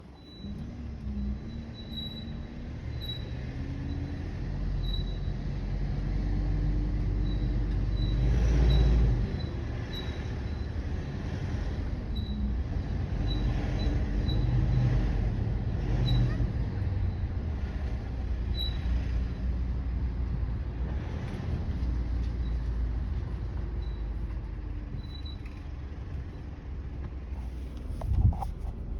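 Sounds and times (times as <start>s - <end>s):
engine and road rumble: 0.0s - 28.9s
car wheel squeaking: 27.4s - 28.9s.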